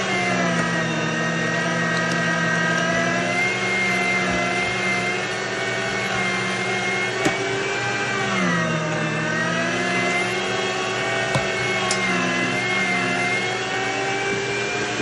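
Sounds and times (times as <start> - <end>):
kitchen appliance motor humming: 0.0 - 15.0.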